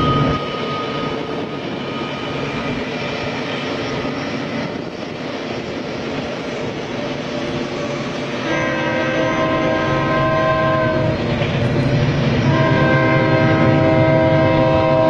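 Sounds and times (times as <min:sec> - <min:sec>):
train rumbling: 0:00.0 - 0:15.0
train horn: 0:08.3 - 0:11.2, 0:12.4 - 0:15.0.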